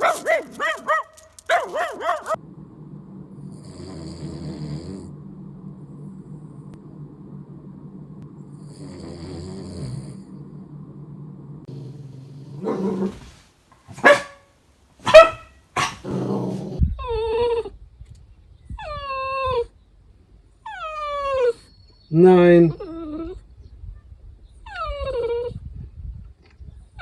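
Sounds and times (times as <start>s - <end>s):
dog barking: 0.0s - 2.4s, 12.0s - 16.5s
dog rumbling: 0.0s - 2.4s, 11.7s - 14.4s, 15.0s - 16.9s
dog growling: 3.4s - 5.1s, 8.6s - 10.3s, 11.7s - 14.4s, 15.0s - 16.8s
dog whining: 15.0s - 17.7s, 20.7s - 21.8s, 22.7s - 23.4s.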